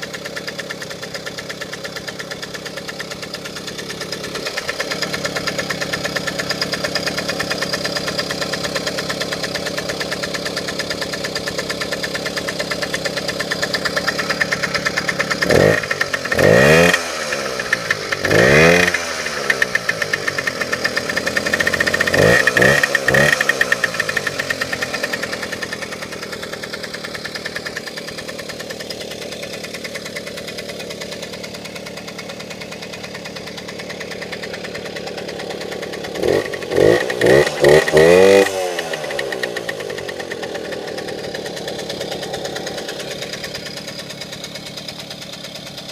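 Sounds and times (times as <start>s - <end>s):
two-stroke engine idling and revving: 0.0s - 45.9s.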